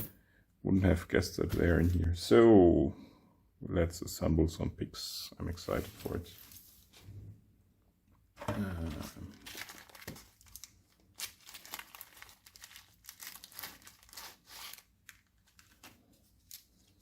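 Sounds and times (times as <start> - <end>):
plastic packaging crinkling: 8.8 - 17.0.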